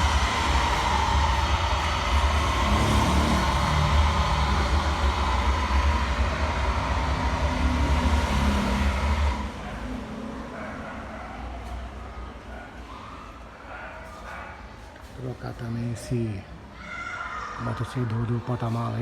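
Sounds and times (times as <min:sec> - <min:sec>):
vehicle rumble: 0:00.0 - 0:13.0.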